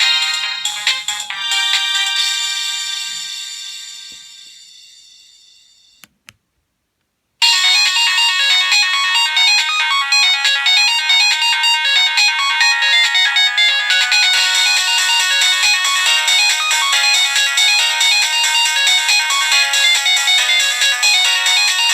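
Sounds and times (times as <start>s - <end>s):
monophonic ringtone beeping melody: 7.4s - 21.9s.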